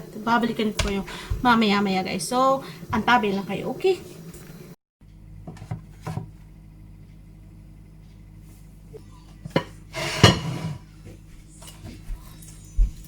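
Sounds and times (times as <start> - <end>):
dishes and cutlery clattering: 9.5 - 10.8.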